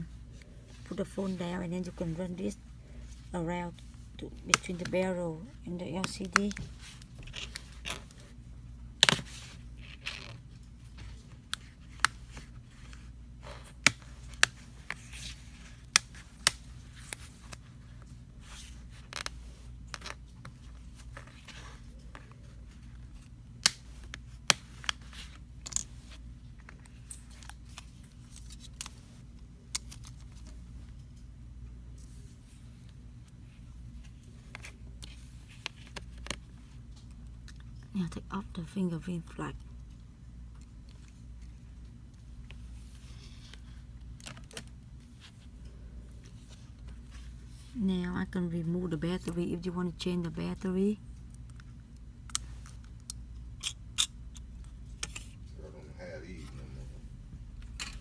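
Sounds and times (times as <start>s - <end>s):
steady low hum: 0.0s - 58.0s.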